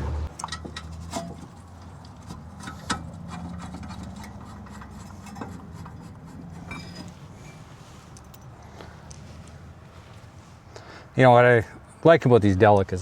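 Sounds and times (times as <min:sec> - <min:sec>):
metal clinks and knocks: 0:00.3 - 0:08.6.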